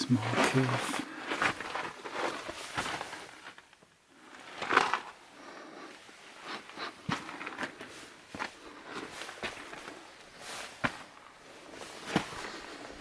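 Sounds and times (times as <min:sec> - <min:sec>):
footsteps on rocky ground: 0:07.0 - 0:10.0.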